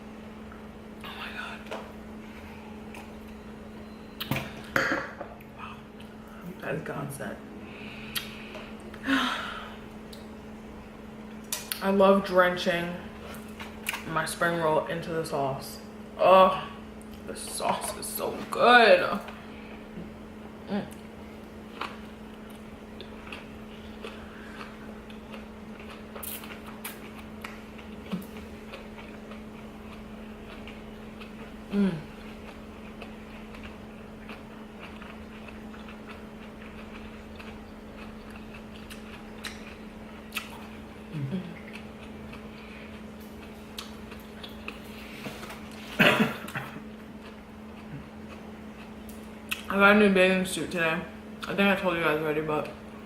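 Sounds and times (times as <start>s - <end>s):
low room hum: 0.0s - 53.0s
person chewing: 20.9s - 49.7s.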